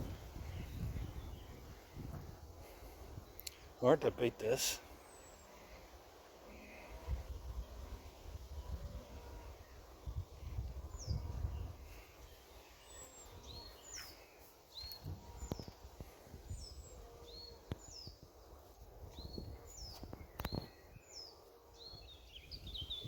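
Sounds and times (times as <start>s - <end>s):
wind rumble on microphone: 0.0s - 3.3s, 7.1s - 12.2s, 18.9s - 21.0s, 21.9s - 23.0s.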